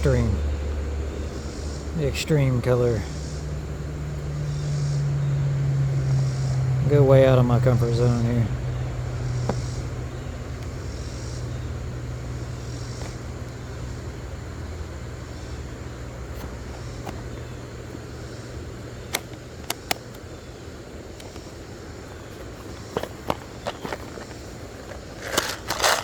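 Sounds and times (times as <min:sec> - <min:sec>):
passing motor vehicle rumble: 0:00.0 - 0:26.0
sharp clicks: 0:19.1 - 0:20.3.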